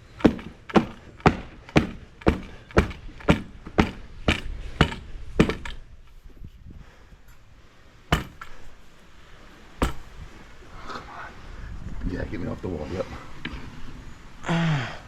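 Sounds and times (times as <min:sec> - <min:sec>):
mats thudding into concrete: 0:08.1 - 0:08.7, 0:09.8 - 0:10.3.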